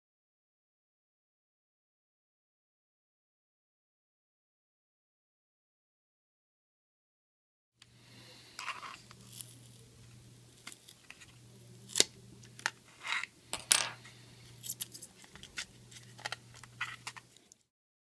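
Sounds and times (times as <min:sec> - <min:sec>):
faint steady hum: 0:07.8 - 0:17.7
clicks and scrapes of small parts: 0:08.6 - 0:09.8, 0:10.5 - 0:17.6.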